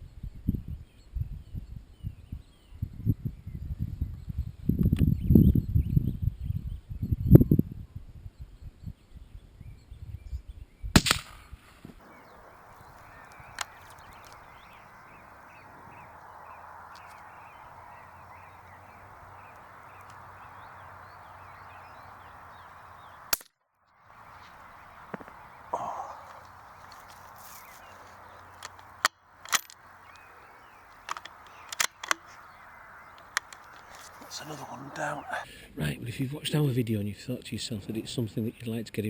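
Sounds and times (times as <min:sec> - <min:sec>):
outdoor background: 0:00.0 - 0:39.0
rifle shot: 0:11.0 - 0:14.5
faint bird chirps: 0:12.0 - 0:35.5.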